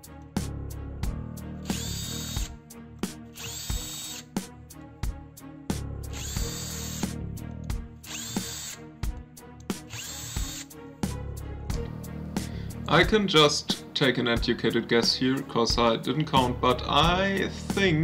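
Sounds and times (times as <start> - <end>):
electric screwdriver whining: 1.6 - 2.6, 3.3 - 4.3, 6.1 - 7.2, 8.0 - 8.9, 9.8 - 10.7.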